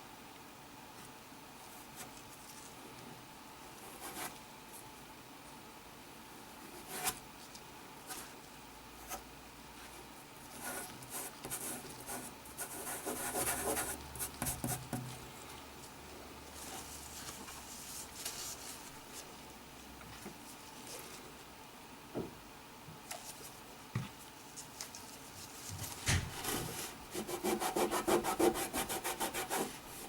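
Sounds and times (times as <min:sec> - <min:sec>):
rubbing on a hard surface: 0:24.6 - 0:30.0.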